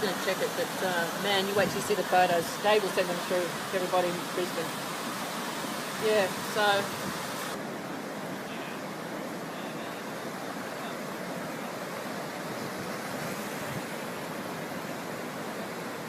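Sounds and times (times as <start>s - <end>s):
floodwater rushing: 0.0s - 16.0s.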